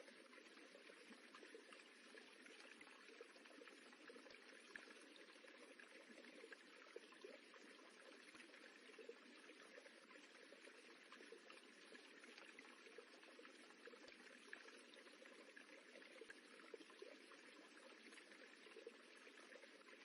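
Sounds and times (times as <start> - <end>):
faint trickling water: 0.0 - 20.0.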